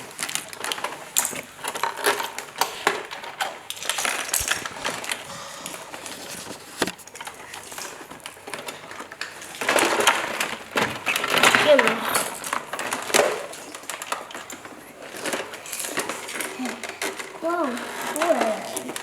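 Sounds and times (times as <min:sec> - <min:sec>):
plastic packaging crinkling: 0:00.1 - 0:19.0.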